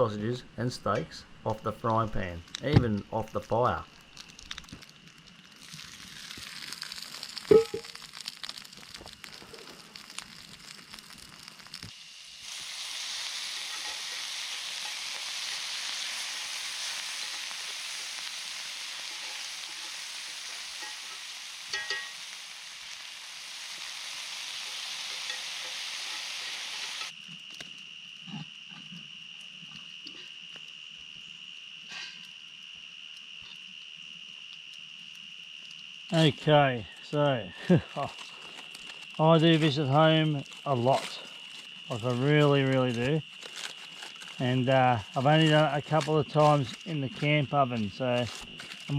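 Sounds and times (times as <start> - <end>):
faint high insect-like buzz: 0.0 - 48.9
food sizzling in a frying pan: 2.7 - 27.2, 35.9 - 48.9.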